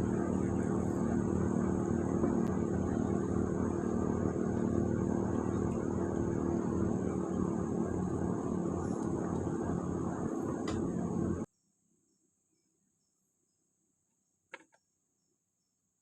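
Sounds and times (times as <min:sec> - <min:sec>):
small engine droning: 0:00.0 - 0:11.5.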